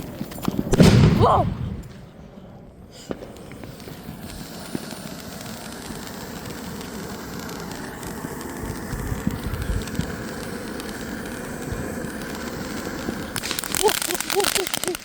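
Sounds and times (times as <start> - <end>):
sharp pops: 0.6 - 2.2, 12.2 - 15.0
fountain firework hissing: 2.8 - 15.0
wind on microphone: 8.6 - 10.5.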